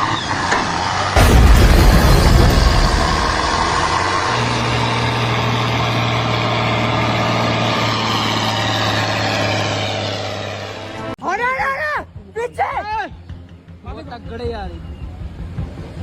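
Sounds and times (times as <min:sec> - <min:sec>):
large vehicle engine running: 0:00.0 - 0:11.2, 0:13.3 - 0:16.0
dense rushing noise: 0:00.7 - 0:10.9.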